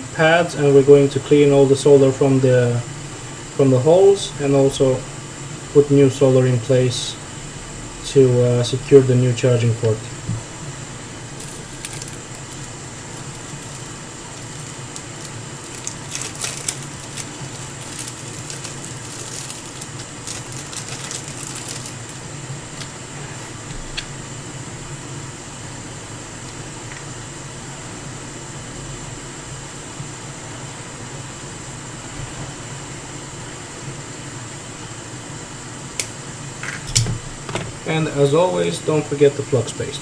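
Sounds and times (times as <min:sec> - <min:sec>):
steady fan-like hum: 0:00.0 - 0:40.0
soldering iron crackling and clicking: 0:11.4 - 0:23.0.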